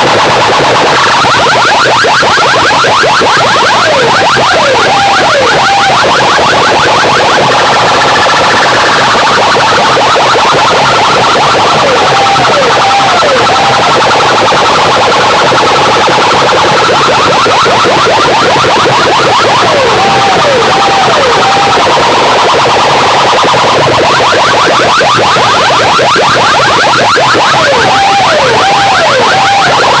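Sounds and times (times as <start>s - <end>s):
distorted siren-like electronic effect: 0.0s - 30.0s.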